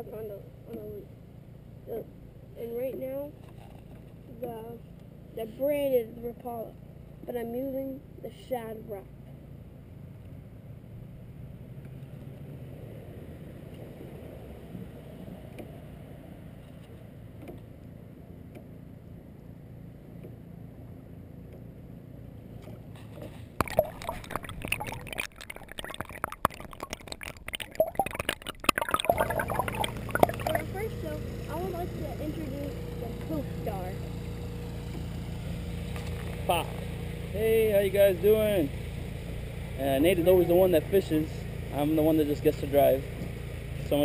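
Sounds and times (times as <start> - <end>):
water beneath boat: 0.0 - 7.7, 21.3 - 44.0
boat motor humming: 17.2 - 44.0.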